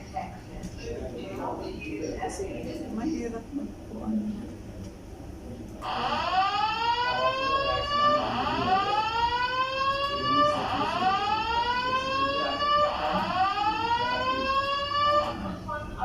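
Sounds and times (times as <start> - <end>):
fire alarm whoop tone: 5.8 - 15.6.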